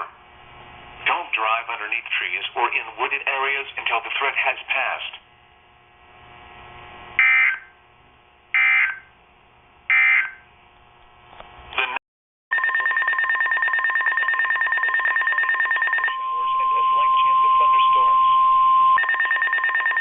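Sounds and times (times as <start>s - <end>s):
continuous buzzing data signal: 3.3s - 9.2s, 9.8s - 10.7s, 12.5s - 20.0s
shrill digital data bursts: 14.8s - 20.0s.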